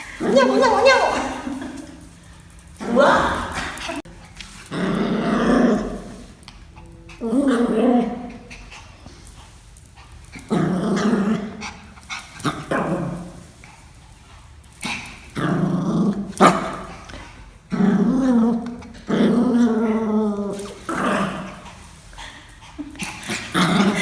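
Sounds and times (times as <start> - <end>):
dog growling: 2.8 - 9.0, 10.4 - 13.3, 14.8 - 21.7, 22.3 - 24.0.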